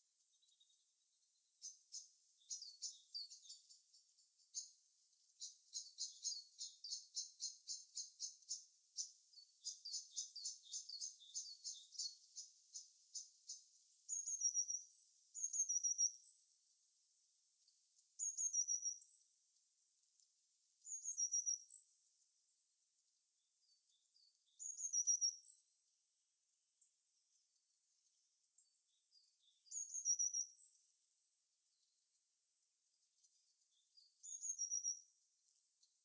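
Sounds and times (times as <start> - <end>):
songbirds chipping: 0.0 - 36.0
bird song phrase: 0.2 - 16.4, 17.6 - 19.3, 20.3 - 22.0, 23.6 - 25.7, 27.1 - 30.9, 32.9 - 35.2.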